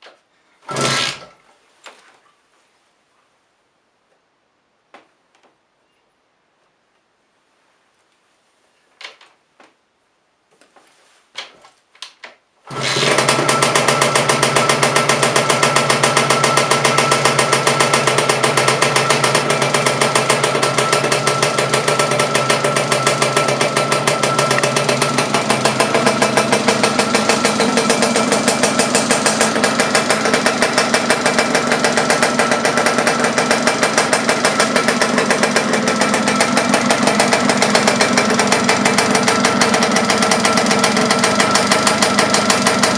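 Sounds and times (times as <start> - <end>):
two-stroke engine running: 0.7 - 1.3, 12.7 - 42.9
engine knocks: 12.7 - 42.9.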